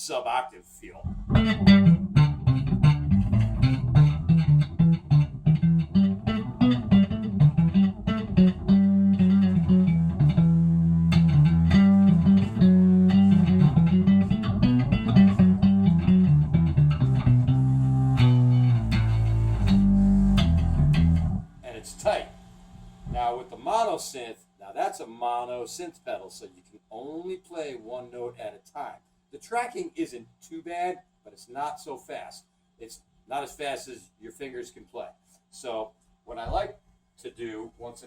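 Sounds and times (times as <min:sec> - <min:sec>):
synth bass plucked notes: 0:01.0 - 0:21.5.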